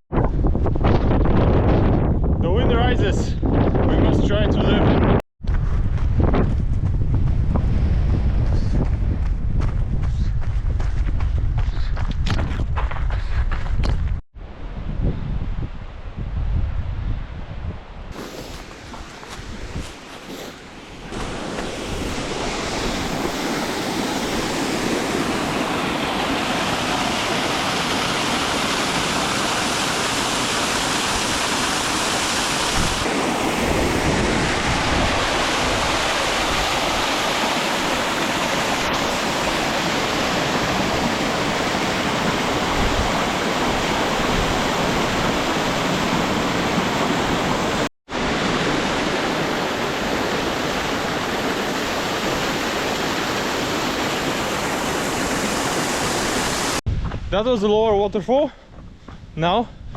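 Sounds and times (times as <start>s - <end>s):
waterfall pouring: 18.2s - 47.0s.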